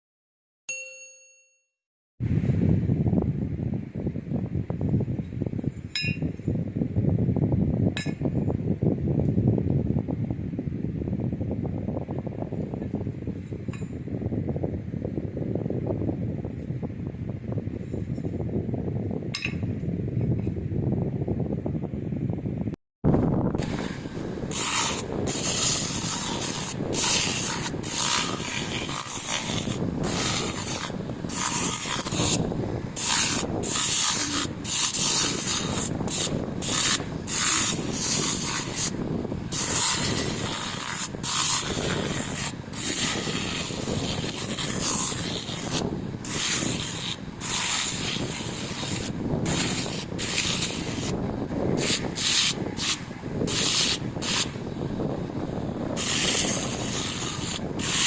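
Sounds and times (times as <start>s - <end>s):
sandpaper rasping on metal: 23.6s - 54.6s, 55.8s - 58.0s.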